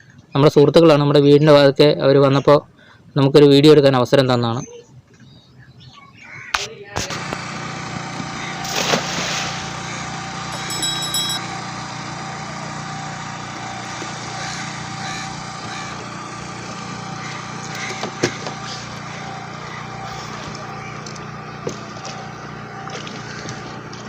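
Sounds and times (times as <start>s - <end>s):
small engine running: 7.1s - 24.0s.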